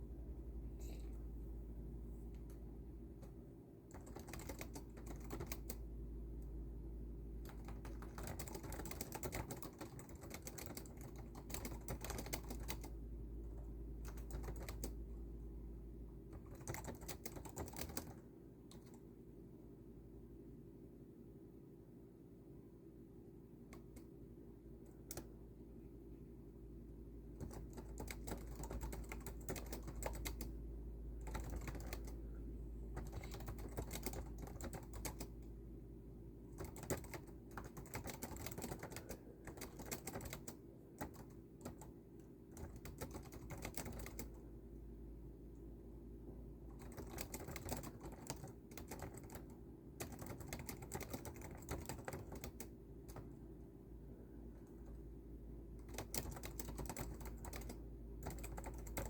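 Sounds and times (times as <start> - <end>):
steady low hum: 0.0 - 59.0
typing on computer keyboard: 3.2 - 5.8, 7.4 - 15.0, 16.3 - 19.0, 24.9 - 25.3, 27.4 - 30.6, 31.2 - 32.2, 32.9 - 35.5, 36.5 - 44.4, 46.7 - 53.3, 55.8 - 59.0.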